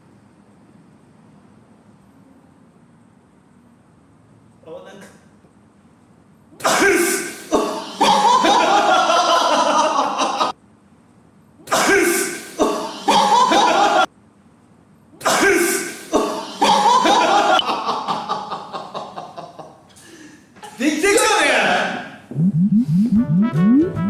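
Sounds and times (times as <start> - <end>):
man sneezing: 6.6 - 8.3, 11.6 - 13.9, 15.2 - 17.2.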